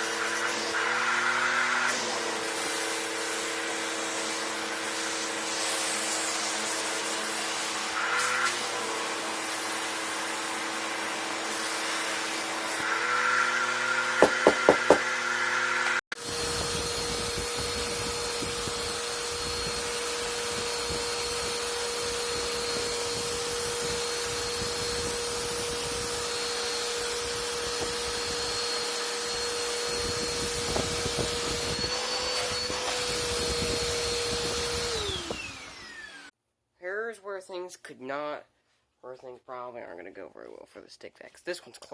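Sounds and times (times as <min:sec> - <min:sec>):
vacuum cleaner motor running: 0:00.0 - 0:36.3
vacuum motor high whine: 0:00.0 - 0:36.3.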